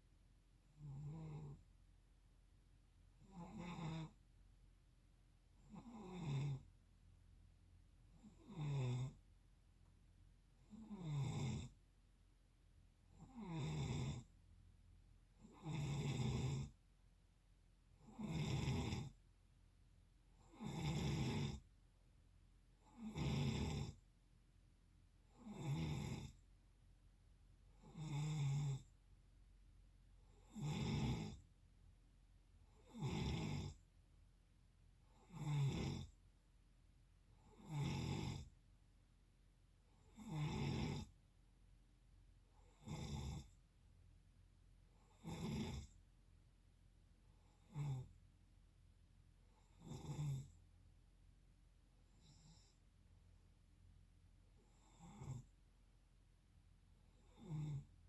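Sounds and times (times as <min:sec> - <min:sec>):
person snoring: 0:00.8 - 0:01.6, 0:03.2 - 0:04.2, 0:05.7 - 0:06.7, 0:08.2 - 0:09.2, 0:10.7 - 0:11.7, 0:13.2 - 0:14.3, 0:15.4 - 0:16.7, 0:18.0 - 0:19.2, 0:20.4 - 0:21.6, 0:22.9 - 0:24.0, 0:25.4 - 0:26.4, 0:27.8 - 0:28.9, 0:30.4 - 0:31.4, 0:32.8 - 0:33.8, 0:35.2 - 0:36.2, 0:37.4 - 0:38.5, 0:40.0 - 0:41.1, 0:42.6 - 0:43.6, 0:45.1 - 0:46.0, 0:49.6 - 0:50.6, 0:52.1 - 0:52.8, 0:57.2 - 0:57.9.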